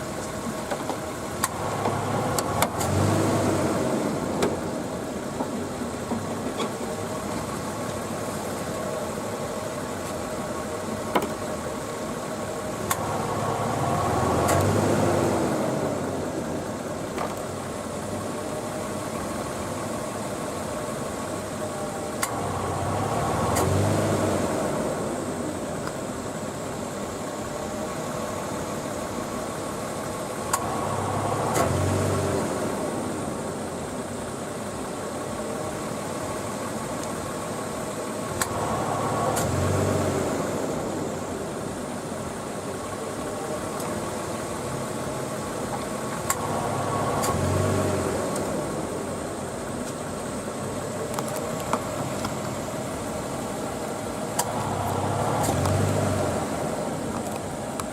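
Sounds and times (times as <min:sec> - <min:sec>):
air conditioning compressor running: 0:00.0 - 0:57.9
car engine idling: 0:00.0 - 0:57.9
compressor clutch clicking: 0:00.2 - 0:03.2, 0:14.0 - 0:14.8, 0:54.2 - 0:57.9.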